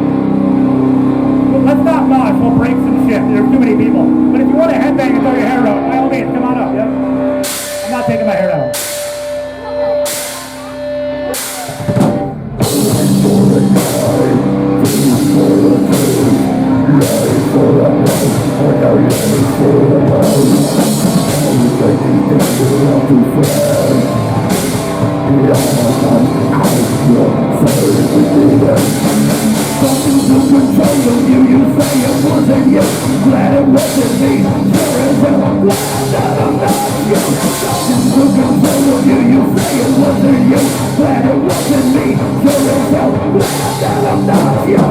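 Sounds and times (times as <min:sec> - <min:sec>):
rock band playing: 0:00.0 - 0:44.9
drum kit and cymbals: 0:07.4 - 0:44.9.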